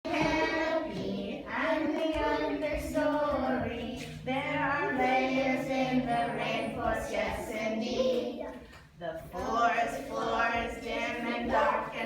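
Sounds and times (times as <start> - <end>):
children and woman singing: 0.0 - 12.0.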